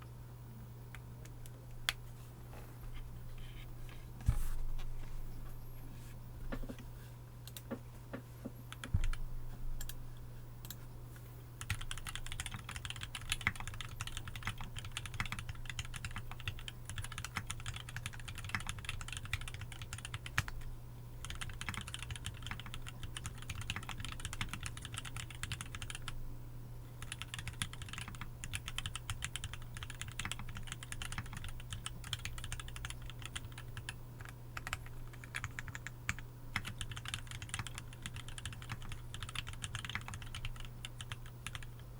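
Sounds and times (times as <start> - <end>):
typing on mechanical keyboard: 11.6 - 20.6, 21.2 - 26.1, 27.0 - 41.8.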